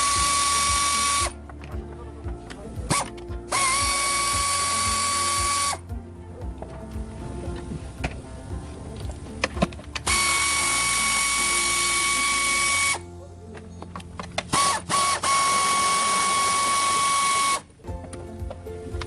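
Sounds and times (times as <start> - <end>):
power tool whining hiss: 0.0 - 1.4, 3.5 - 5.8, 10.1 - 13.0, 14.5 - 17.7.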